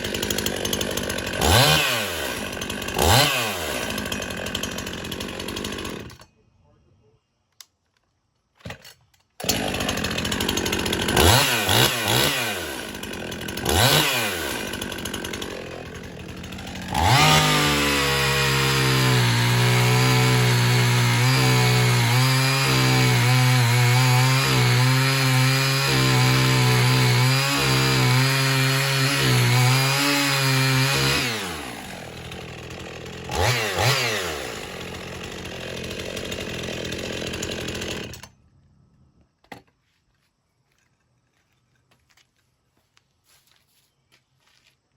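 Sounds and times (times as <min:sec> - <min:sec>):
chainsaw engine idling and revving: 0:00.0 - 0:06.4, 0:09.4 - 0:38.4.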